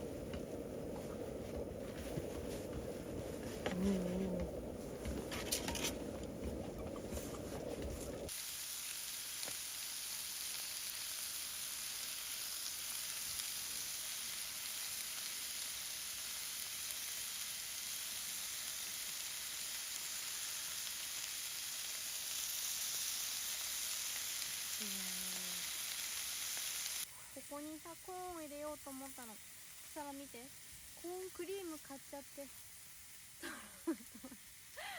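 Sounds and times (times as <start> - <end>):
low rumbling noise: 0.0 - 8.3
food sizzling in a frying pan: 5.0 - 34.9.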